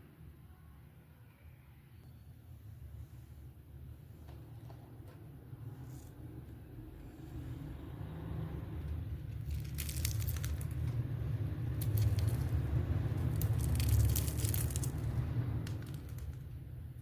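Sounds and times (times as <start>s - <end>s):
steady low rumble: 6.7s - 17.0s
crunching crispy snacks: 9.3s - 11.0s, 11.6s - 16.5s.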